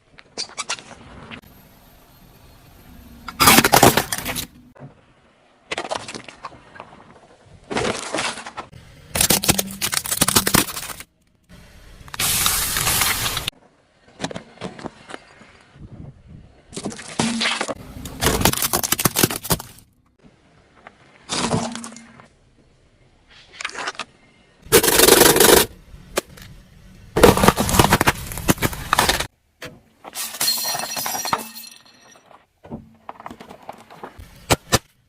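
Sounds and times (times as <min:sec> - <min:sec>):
objects crushed under car tyre: 0:03.3 - 0:04.8, 0:07.7 - 0:11.2, 0:16.7 - 0:19.9, 0:27.2 - 0:29.3.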